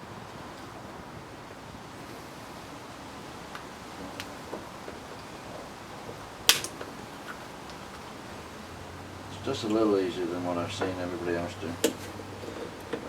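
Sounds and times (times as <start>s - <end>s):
plastic shell snapping: 6.5s - 6.8s.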